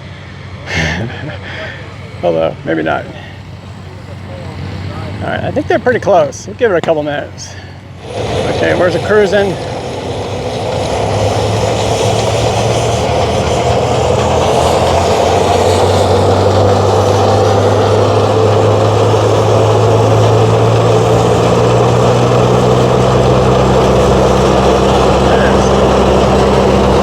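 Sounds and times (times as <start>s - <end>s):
threshing machine whir: 2.9s - 27.0s
low hum: 7.5s - 27.0s.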